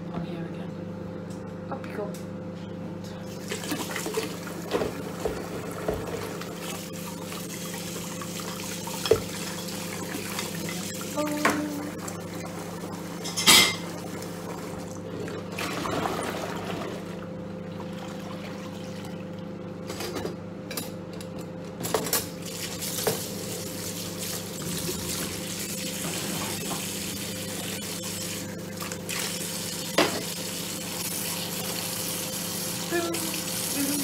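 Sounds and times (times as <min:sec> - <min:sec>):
microwave humming: 0:00.0 - 0:34.0
tap water splashing in sink: 0:03.5 - 0:06.8, 0:07.8 - 0:12.5.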